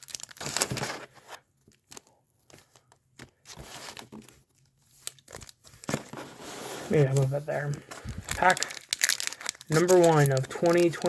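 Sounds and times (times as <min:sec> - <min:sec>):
foil wrappers crinkling: 0:00.0 - 0:06.0, 0:07.0 - 0:11.0.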